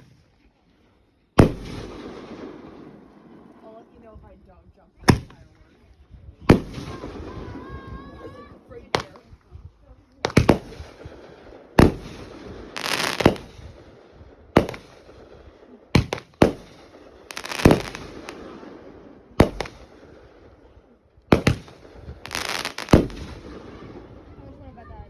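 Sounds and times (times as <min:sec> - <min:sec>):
firework bangs: 0:00.0 - 0:00.2, 0:01.4 - 0:03.8, 0:05.1 - 0:05.5, 0:06.5 - 0:09.4, 0:10.2 - 0:20.6, 0:21.3 - 0:24.3
crackling firework bursts: 0:00.0 - 0:00.3, 0:01.4 - 0:03.6, 0:06.5 - 0:09.3, 0:10.3 - 0:20.7, 0:21.3 - 0:24.4.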